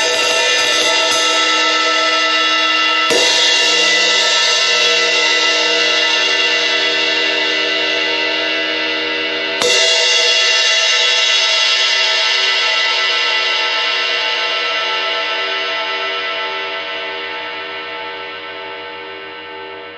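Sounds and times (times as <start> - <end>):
ride cymbal ringing: 0.0 - 7.4.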